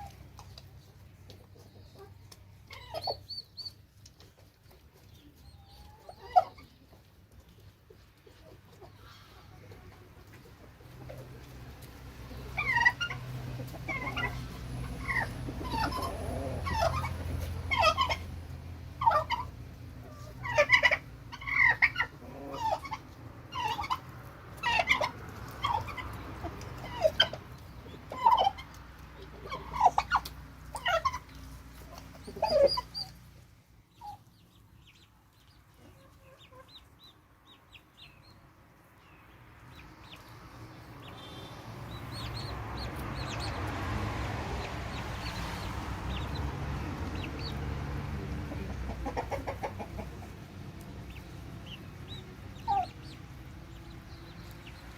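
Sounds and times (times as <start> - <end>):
poultry calling: 12.2 - 18.4, 19.0 - 27.4.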